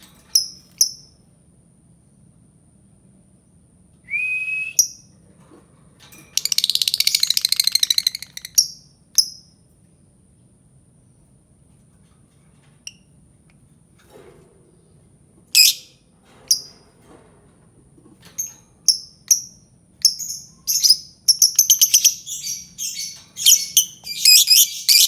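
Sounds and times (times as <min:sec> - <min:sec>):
lovebird calling and chirping: 0:06.4 - 0:09.4, 0:15.6 - 0:15.9, 0:18.9 - 0:25.0.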